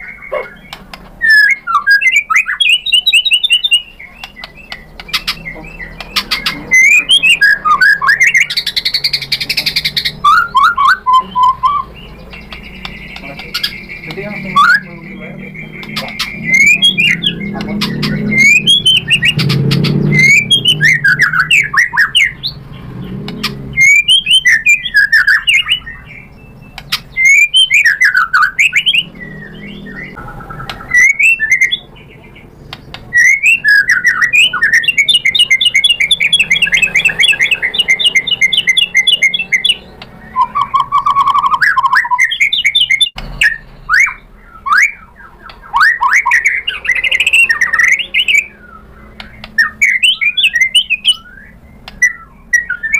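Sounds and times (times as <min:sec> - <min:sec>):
bird singing whistles and chatters: 0:00.0 - 0:52.9.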